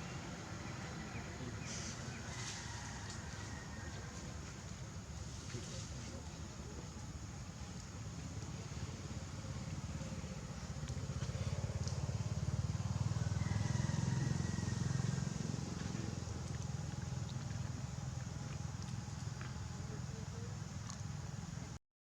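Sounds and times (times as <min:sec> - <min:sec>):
vehicle engine passing: 0:08.2 - 0:21.8.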